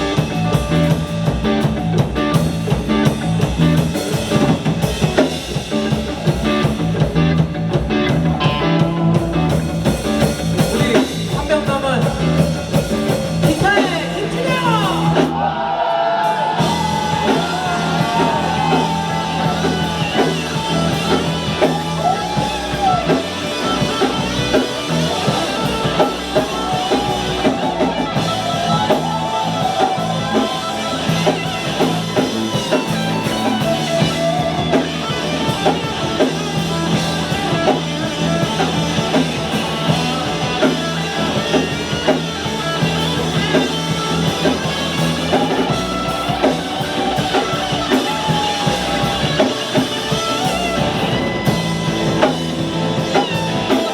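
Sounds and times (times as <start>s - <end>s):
live rock band playing: 0.0s - 53.9s
wavering lead melody: 16.6s - 53.9s.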